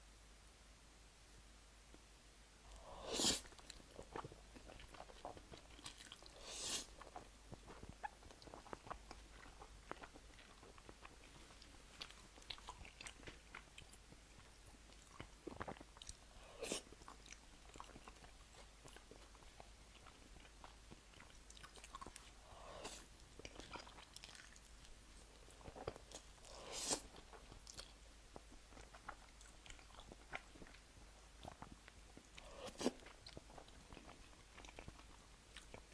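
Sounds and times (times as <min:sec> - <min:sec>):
person chewing crunchy food: 0:02.8 - 0:35.9.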